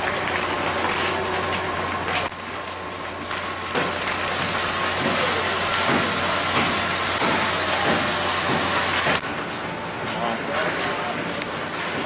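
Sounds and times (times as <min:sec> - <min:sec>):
loud pressurized hiss: 0:04.2 - 0:09.2.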